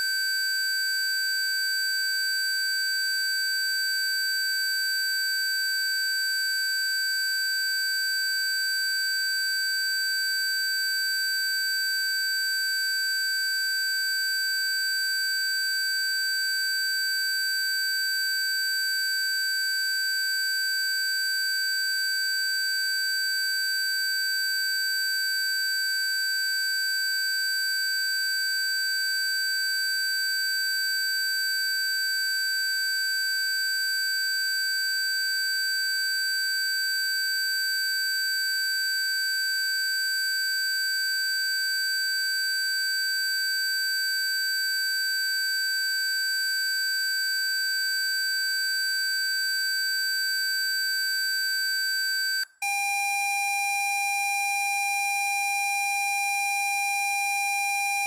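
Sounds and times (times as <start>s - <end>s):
steady high-pitched tones: 52.6s - 58.0s.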